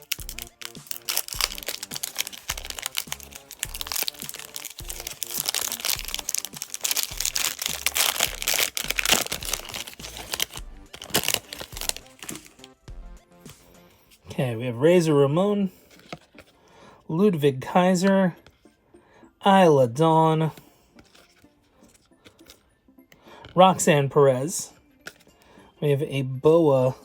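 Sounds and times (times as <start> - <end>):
wrapper tearing and crinkling: 0.0 - 12.7
background music: 0.0 - 27.0.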